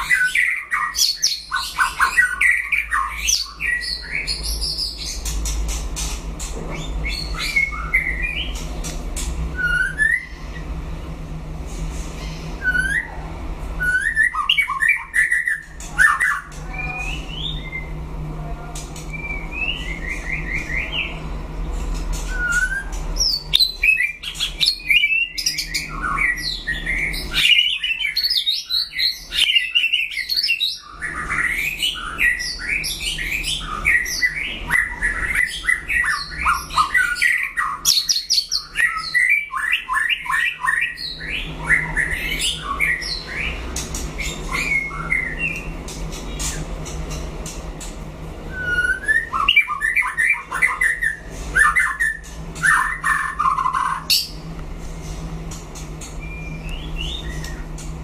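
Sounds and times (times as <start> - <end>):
songbird singing whistles and chatter: 6.8 - 8.6, 9.5 - 10.5, 12.3 - 13.2, 13.8 - 18.0, 19.0 - 21.2, 22.1 - 43.6, 44.2 - 45.7, 48.5 - 54.4, 56.2 - 57.8.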